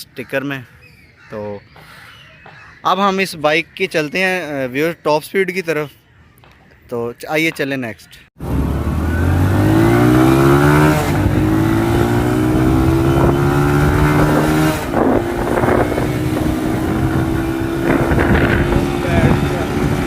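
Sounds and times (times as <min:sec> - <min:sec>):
motorcycle engine accelerating: 0:08.4 - 0:20.0.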